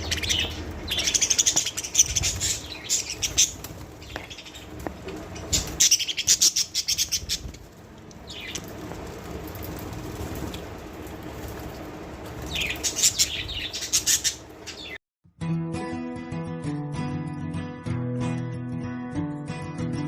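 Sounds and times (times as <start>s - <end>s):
budgies chirping: 0.0s - 9.0s, 12.4s - 15.0s.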